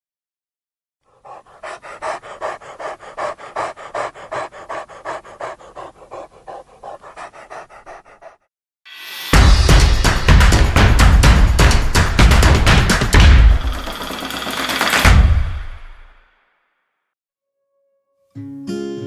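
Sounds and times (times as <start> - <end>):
rapid panting: 1.1 - 8.5, 9.7 - 14.2.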